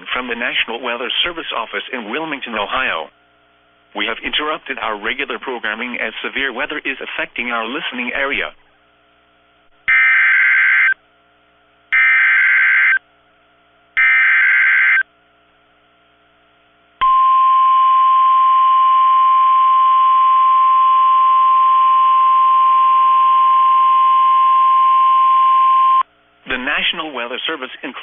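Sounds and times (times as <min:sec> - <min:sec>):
steady warning alarm tone: 0:09.9 - 0:11.0, 0:11.9 - 0:13.0, 0:14.0 - 0:15.0.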